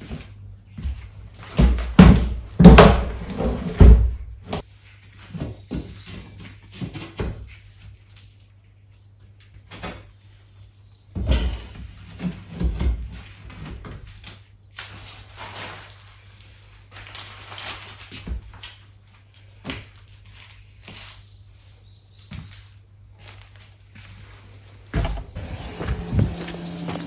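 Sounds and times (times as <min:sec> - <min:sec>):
knocks and thuds: 0:01.6 - 0:04.2, 0:25.0 - 0:27.0
scraping: 0:24.5 - 0:27.0
steady low hum: 0:24.8 - 0:27.0.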